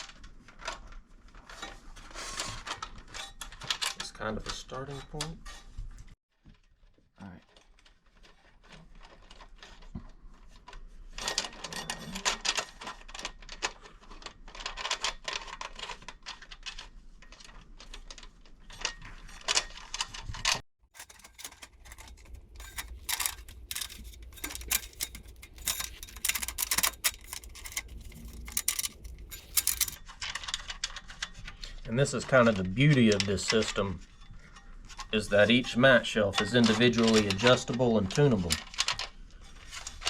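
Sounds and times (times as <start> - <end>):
wing nuts clicking and rattling: 18.7 - 31.4.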